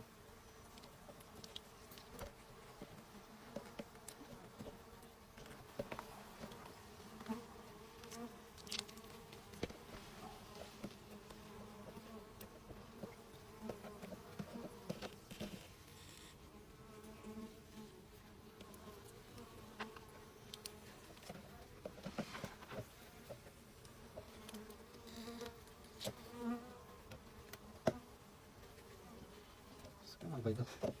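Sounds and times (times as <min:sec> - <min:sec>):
small clicks and crackles: 0:00.7 - 0:04.8, 0:08.0 - 0:09.8, 0:19.8 - 0:26.2
bees buzzing: 0:22.8 - 0:29.9.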